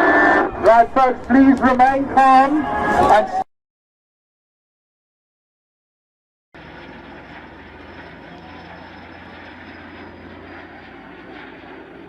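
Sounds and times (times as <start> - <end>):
aircraft engine running: 0.0 - 3.4, 6.6 - 12.0
faint high whine: 6.6 - 11.8.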